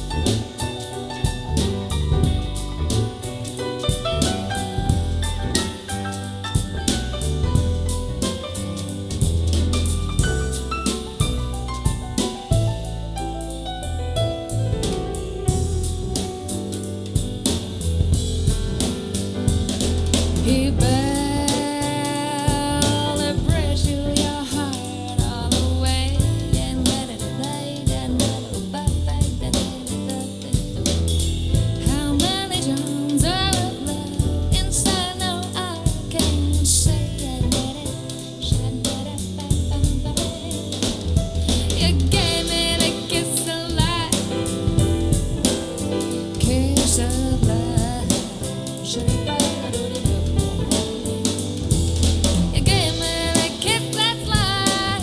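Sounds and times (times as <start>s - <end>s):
soul jazz song with drums: 0.0s - 55.0s
person singing: 52.6s - 55.0s.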